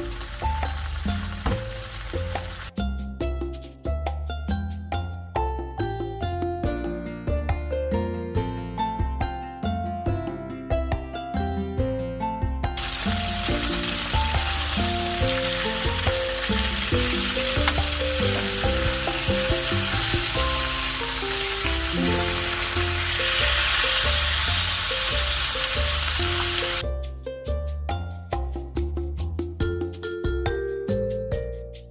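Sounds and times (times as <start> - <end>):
chicken sizzling in hot oil: 0.0 - 2.7, 12.8 - 26.8.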